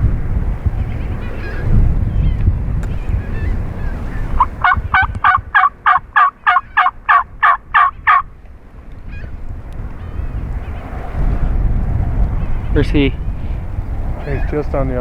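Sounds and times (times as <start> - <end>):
wind rumble on microphone: 0.0 - 15.0
wild turkey yelps: 3.2 - 8.2.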